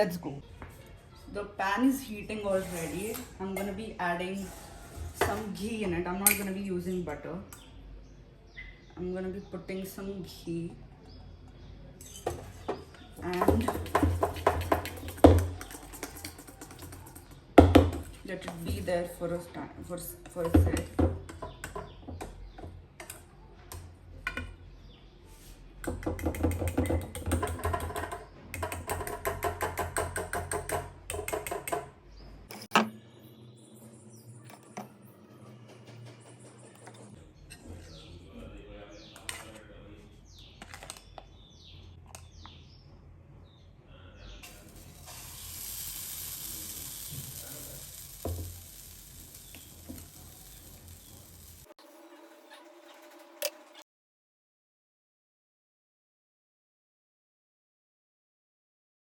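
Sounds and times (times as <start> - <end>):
utensil clicking against cookware: 13.3 - 18.1, 25.8 - 31.9
batter sizzling in a frying pan: 44.4 - 51.8.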